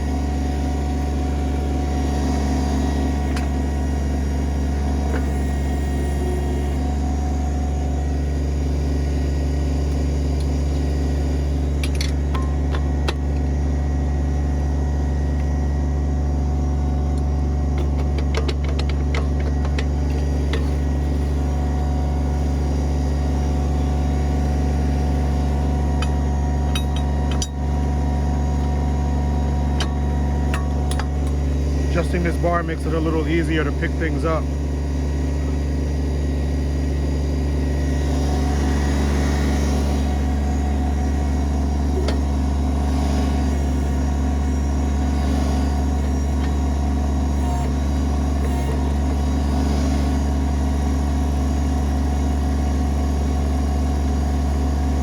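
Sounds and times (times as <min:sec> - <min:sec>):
tractor diesel engine running: 0:00.0 - 0:55.0.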